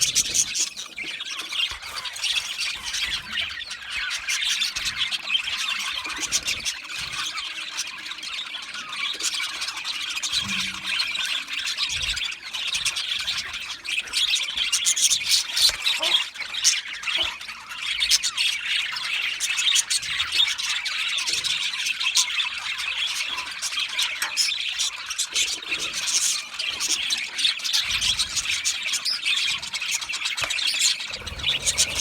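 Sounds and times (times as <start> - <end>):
budgerigars chirping and squawking: 0.0 - 32.0.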